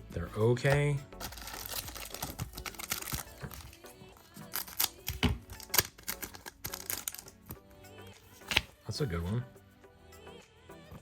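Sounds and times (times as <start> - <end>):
background music: 0.0 - 11.0
foil wrapper crinkling and tearing: 1.2 - 3.8, 4.5 - 7.3.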